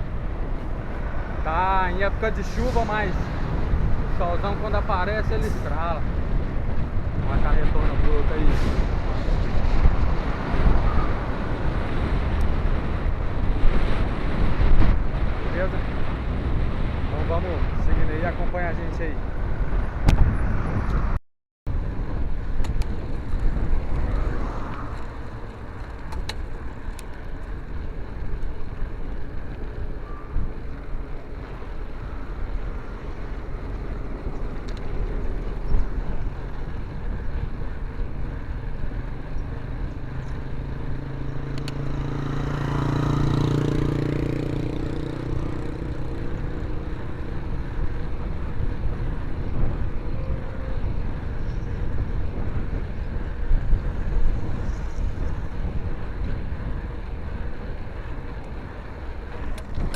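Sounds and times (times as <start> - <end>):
wind and road noise: 0.0 - 59.9
passing vehicle engine: 21.8 - 29.5, 31.4 - 59.9.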